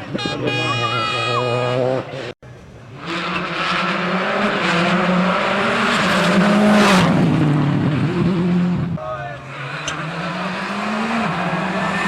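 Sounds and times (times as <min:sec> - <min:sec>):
tyre and road noise: 0:00.0 - 0:12.0
rally car engine at high revs: 0:02.9 - 0:12.0.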